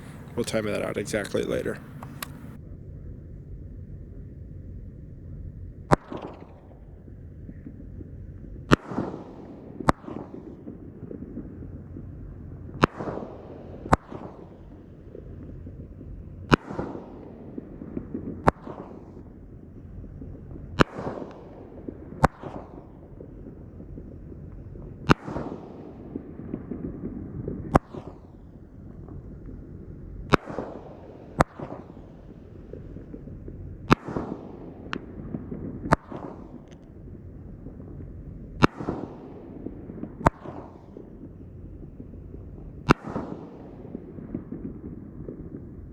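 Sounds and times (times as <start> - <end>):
fireworks hiss: 0.0 - 2.6
fireworks reports: 0.0 - 2.6.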